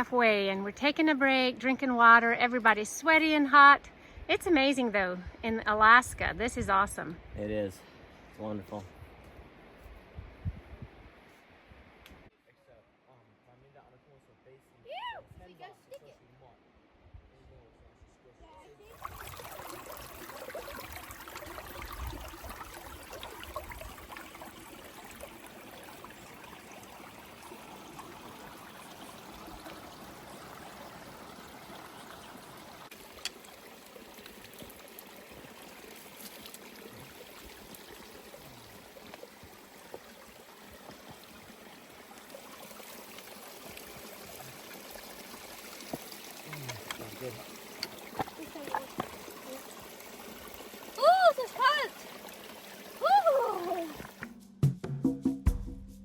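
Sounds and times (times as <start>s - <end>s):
stream running: 0.0s - 9.8s, 18.8s - 54.4s.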